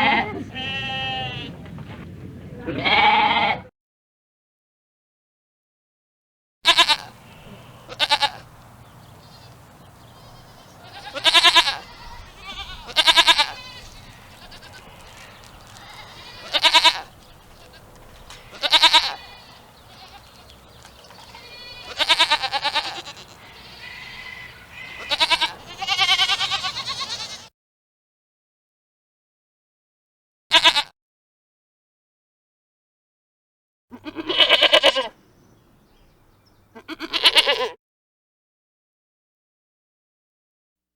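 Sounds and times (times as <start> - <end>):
goats bleating: 0.0 - 1.8, 2.6 - 3.7, 6.7 - 27.5, 30.5 - 30.9, 33.9 - 35.2, 36.7 - 37.8.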